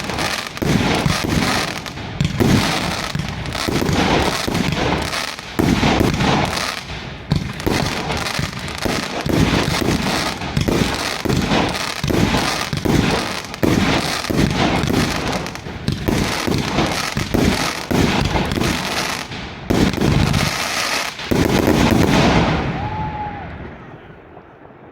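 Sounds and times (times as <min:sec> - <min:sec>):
fireworks bangs and crackle: 0:00.0 - 0:24.9.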